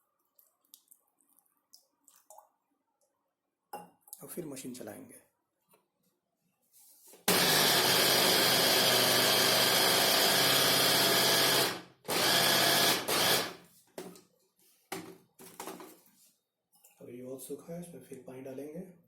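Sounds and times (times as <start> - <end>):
electric mixer motor churning dough: 7.3 - 13.6.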